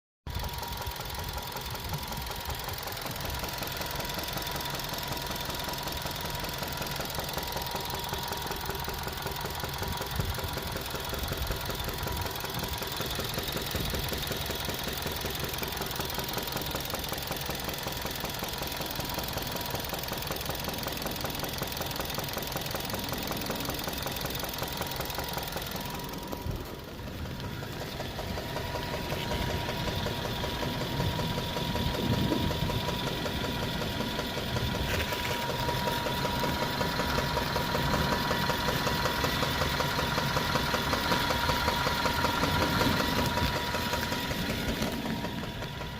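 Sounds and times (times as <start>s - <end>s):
car engine knocking: 0.3s - 45.9s.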